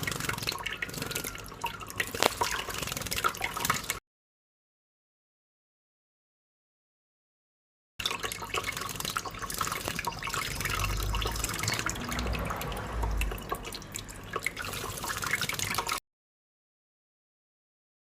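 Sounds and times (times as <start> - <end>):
tap water running into sink: 0.0 - 4.0, 8.0 - 16.0
low rumble: 10.8 - 14.2.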